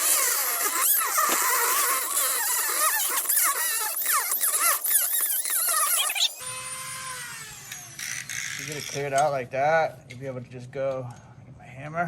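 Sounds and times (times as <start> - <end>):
rubber squealing and squeaking: 0.0 - 9.1.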